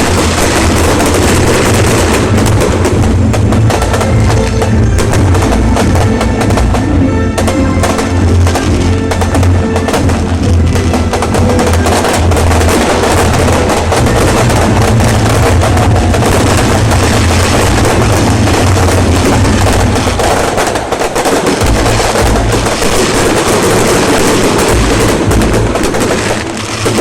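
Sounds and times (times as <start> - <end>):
deep low rumble: 0.0 - 20.4
fireworks crackling: 0.0 - 27.0.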